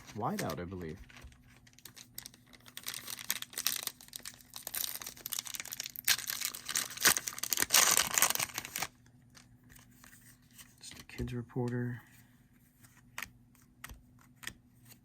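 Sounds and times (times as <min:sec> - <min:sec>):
foil wrapper crinkling and tearing: 0:00.0 - 0:09.4.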